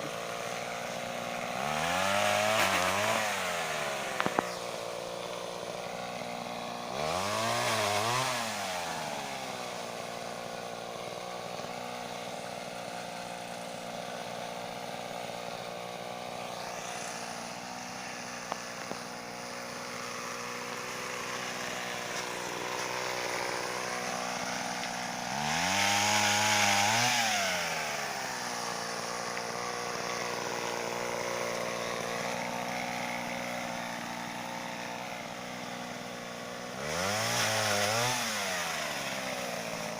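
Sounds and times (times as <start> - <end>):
pole saw engine revving: 0.0 - 39.9.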